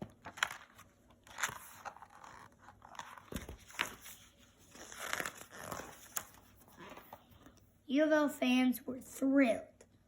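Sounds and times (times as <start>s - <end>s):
book pages rustling: 0.0s - 7.6s.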